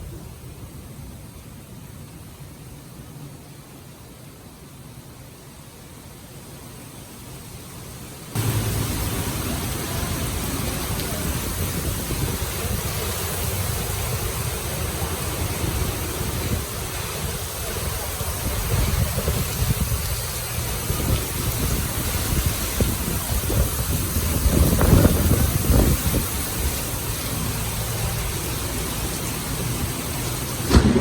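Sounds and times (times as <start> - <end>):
heavy rain: 0.0 - 31.0
wind buffeting microphone: 8.4 - 27.5, 30.7 - 31.0.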